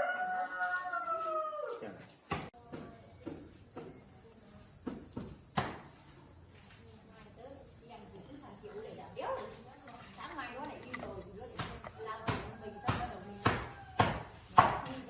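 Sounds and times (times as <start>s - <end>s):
rooster crowing: 0.0s - 2.0s, 11.8s - 14.4s
high-pitched insect chorus: 0.0s - 15.0s
sharp knocks: 11.6s - 14.9s.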